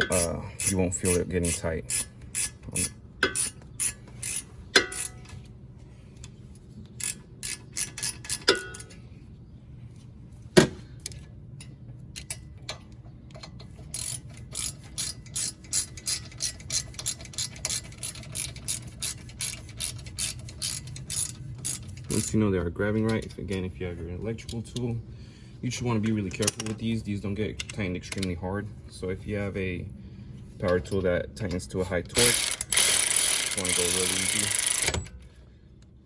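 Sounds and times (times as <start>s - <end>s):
hand ratchet clicking: 0.0s - 5.3s, 7.0s - 8.9s, 13.4s - 22.4s, 32.1s - 35.1s.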